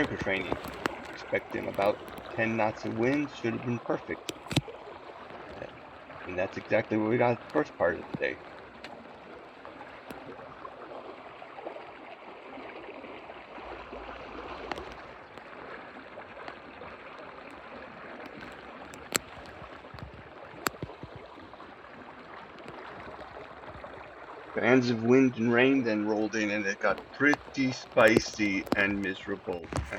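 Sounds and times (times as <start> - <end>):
sharp clicks: 0.0 - 3.3, 4.2 - 5.8, 18.3 - 21.3, 26.8 - 29.9
water gurgling along boat hull: 0.0 - 29.9.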